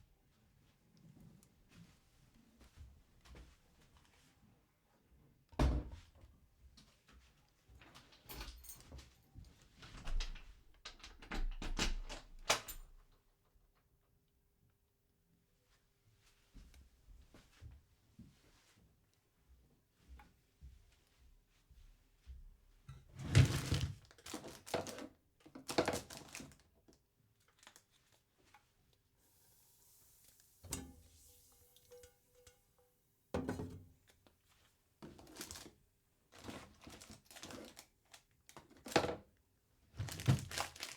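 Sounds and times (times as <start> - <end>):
faint hiss: 29.1 - 33.3
eggs frying crackling: 29.2 - 33.2
pan and utensils clattering: 29.4 - 33.9.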